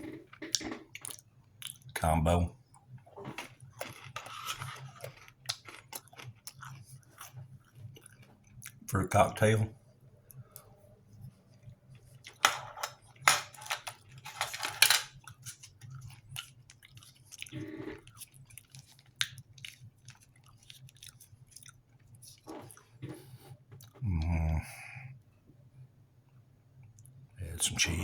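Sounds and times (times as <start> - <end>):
person chewing: 0.5 - 1.9, 3.2 - 8.9, 15.2 - 24.0.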